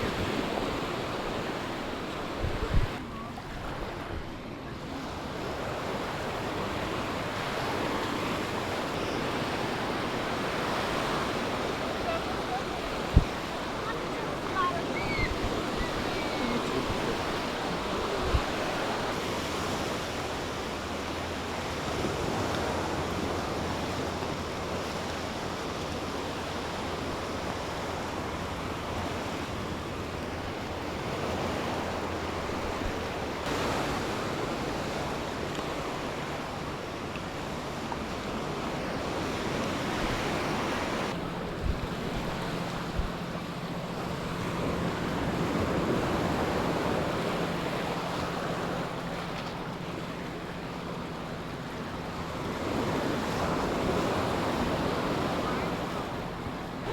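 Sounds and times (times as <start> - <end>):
wind on microphone: 0.0 - 7.8, 8.4 - 36.8
surf washing onto beach: 0.0 - 56.9.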